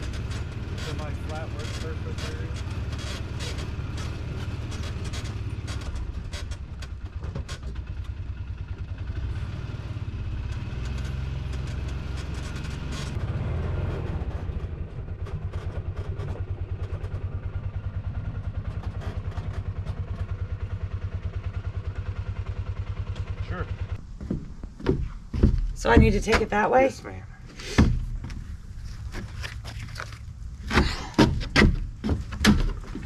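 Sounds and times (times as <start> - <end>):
engine throbbing at low speed: 0.0 - 26.5
clattering knocks: 24.2 - 26.8, 27.5 - 29.3, 30.6 - 33.0.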